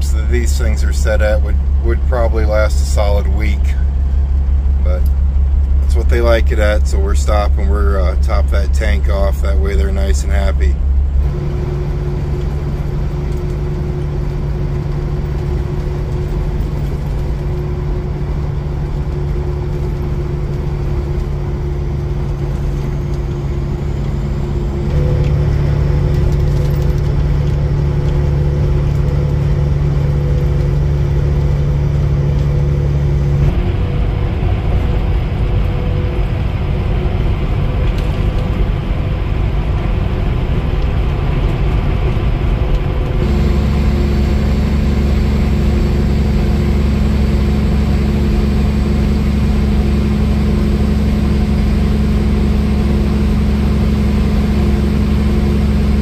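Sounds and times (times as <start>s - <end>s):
road noise: 0.0s - 56.0s
truck engine droning: 0.0s - 56.0s.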